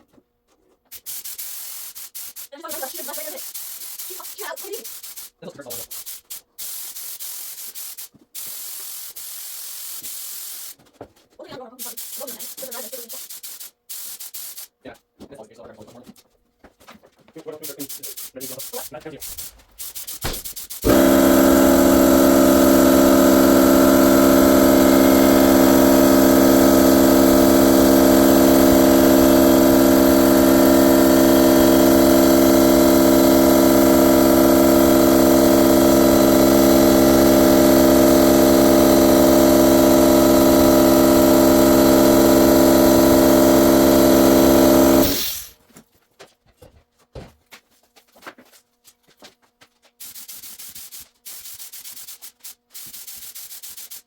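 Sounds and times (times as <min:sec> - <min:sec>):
electric motor running: 0:20.8 - 0:45.6.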